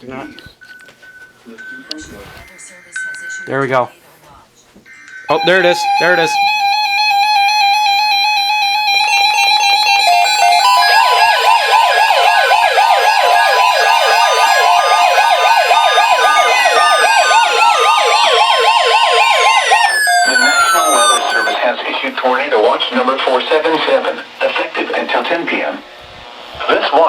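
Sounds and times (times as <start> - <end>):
steady alarm tone: 4.8 - 24.0
falling whistles: 4.9 - 21.6
warbling siren: 5.3 - 21.6.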